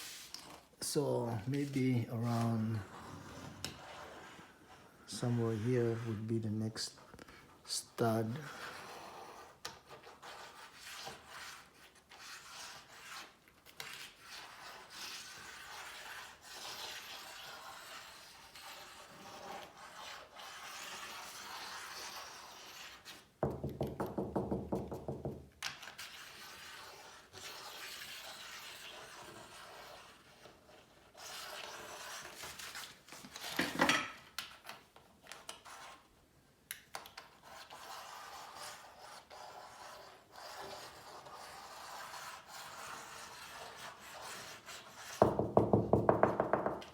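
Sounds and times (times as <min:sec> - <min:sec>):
magnet scraping across wall: 0:00.0 - 0:23.4, 0:25.6 - 0:36.1, 0:36.9 - 0:46.9.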